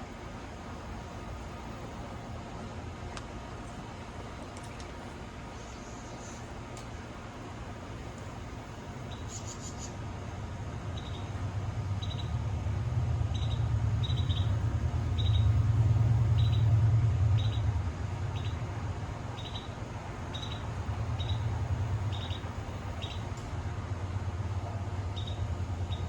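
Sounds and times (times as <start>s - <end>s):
low outdoor rumble: 0.0s - 26.0s
small bird chirping: 9.1s - 10.0s, 11.0s - 11.4s, 12.0s - 12.4s, 13.3s - 15.6s, 16.4s - 16.7s, 17.4s - 17.6s, 18.3s - 18.6s, 19.3s - 23.3s, 25.2s - 26.0s.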